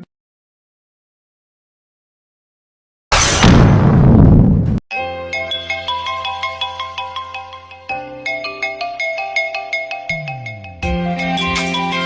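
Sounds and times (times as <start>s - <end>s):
marimba ringtone: 5.0s - 10.9s
electronic tune: 5.0s - 12.0s.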